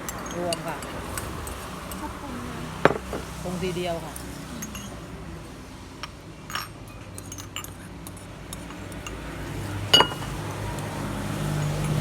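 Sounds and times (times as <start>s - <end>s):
spoon clinking against glass jars: 0.0s - 2.1s, 4.1s - 5.2s, 6.0s - 10.7s, 11.8s - 12.0s.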